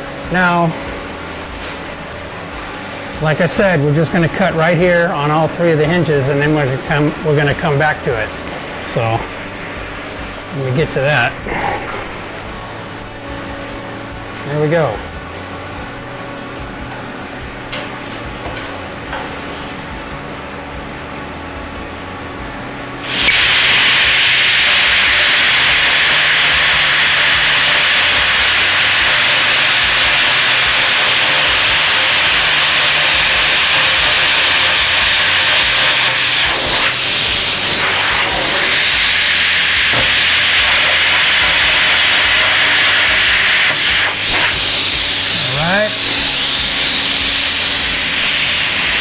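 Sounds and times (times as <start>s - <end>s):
plasma cutter arc hissing: 23.0s - 49.0s.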